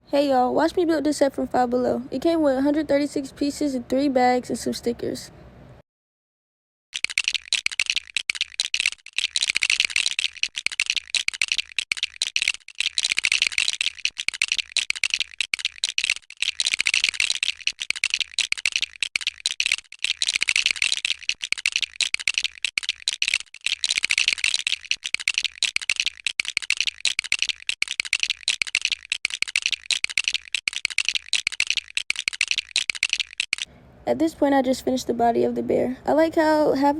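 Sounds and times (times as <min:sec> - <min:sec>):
plastic bricks clicking and rattling: 0:07.0 - 0:33.7.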